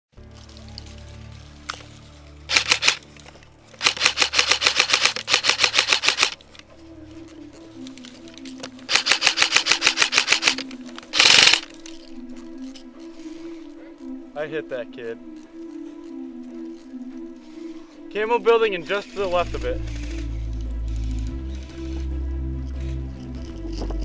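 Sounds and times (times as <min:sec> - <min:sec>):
background music: 0:00.1 - 0:24.0
airsoft rifle full-auto bursts: 0:02.5 - 0:03.0, 0:03.8 - 0:06.4, 0:08.9 - 0:11.7.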